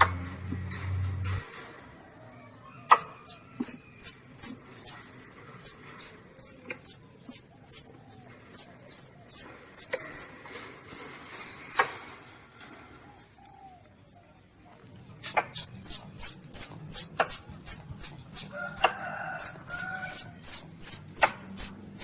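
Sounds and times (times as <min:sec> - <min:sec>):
civet high squeaks: 0:02.9 - 0:12.0, 0:15.2 - 0:22.0.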